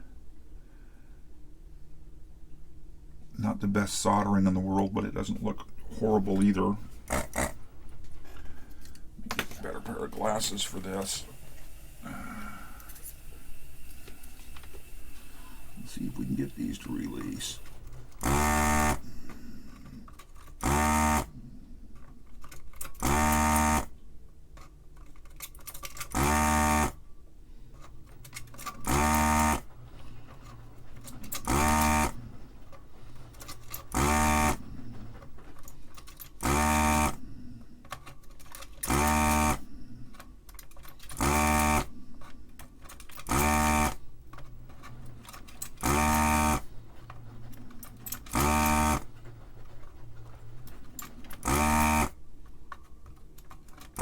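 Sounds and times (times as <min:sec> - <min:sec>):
vacuum pump buzzing: 0:06.0 - 0:21.6, 0:22.9 - 0:24.0, 0:26.0 - 0:27.1, 0:28.2 - 0:40.2, 0:41.0 - 0:52.2.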